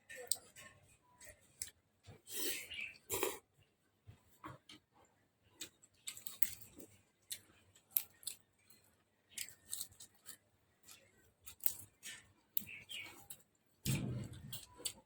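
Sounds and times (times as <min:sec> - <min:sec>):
eating mouth sounds: 0:02.5 - 0:03.4.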